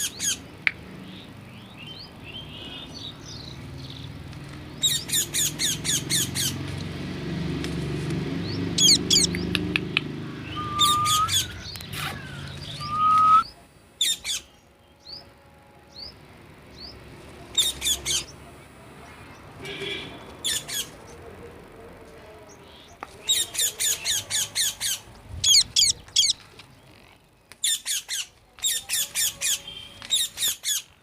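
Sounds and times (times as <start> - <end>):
parrot squawking: 4.8 - 6.6, 8.8 - 9.4, 10.3 - 13.4, 20.4 - 21.0, 23.3 - 26.4
parrot whistling: 8.8 - 9.4, 10.4 - 14.4, 25.4 - 26.3.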